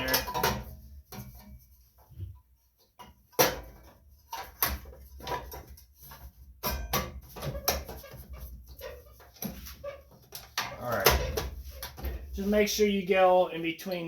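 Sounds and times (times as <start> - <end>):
sheet metal clanking and knocking: 0.0 - 1.6, 6.6 - 12.4.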